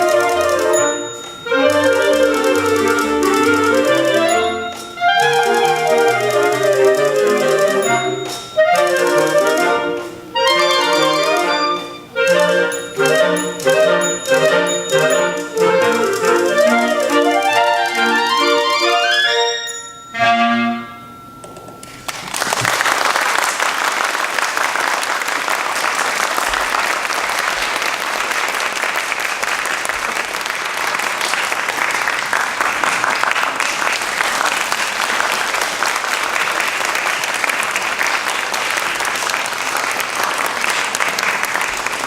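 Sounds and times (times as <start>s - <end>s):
audience applauding: 0.0s - 19.2s, 21.9s - 42.0s
clarinet ensemble playing: 0.0s - 21.2s.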